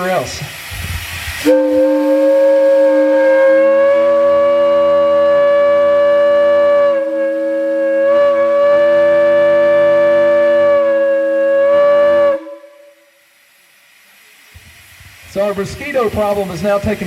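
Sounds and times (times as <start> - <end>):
steam gong whistle chord: 1.4 - 13.3.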